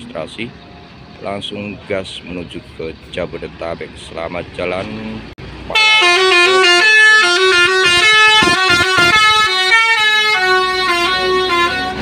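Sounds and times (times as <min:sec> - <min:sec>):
bus horn playing a tune: 0:05.7 - 0:12.0.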